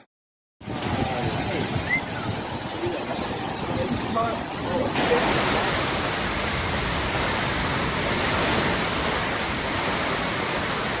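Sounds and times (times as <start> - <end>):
heavy rain and floodwater rushing: 0.6 - 11.0.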